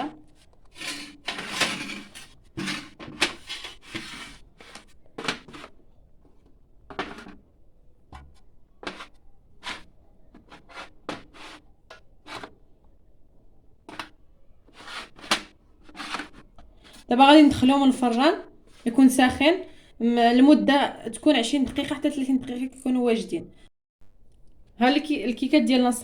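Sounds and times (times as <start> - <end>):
baking mould and utensils clicking: 0.0 - 13.0.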